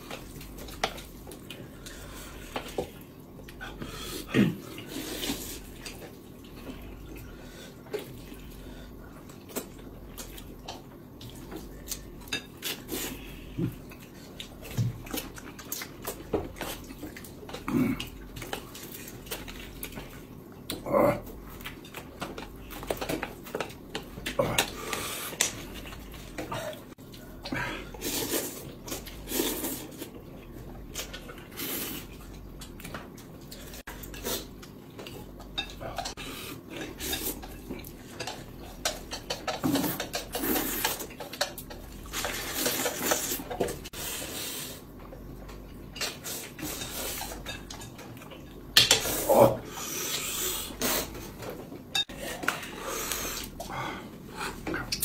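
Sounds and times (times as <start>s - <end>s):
eating noises: 0.0s - 55.0s
utensils clinking against dishes: 35.0s - 43.7s, 51.1s - 52.7s.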